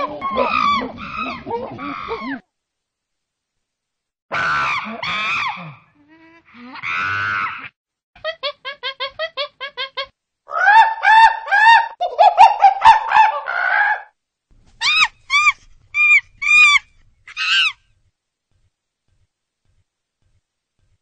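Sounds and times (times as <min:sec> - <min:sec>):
loud bird-like calls: 0:00.0 - 0:02.4, 0:14.8 - 0:18.0.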